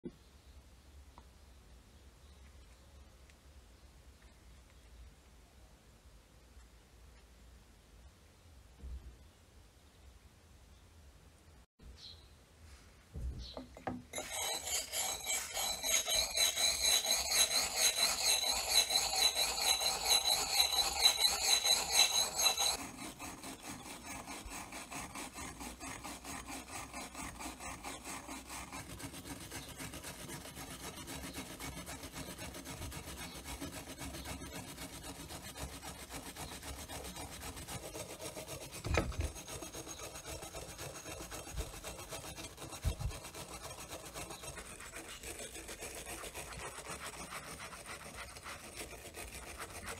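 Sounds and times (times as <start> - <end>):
hand tool rubbing strokes: 13.5 - 49.9.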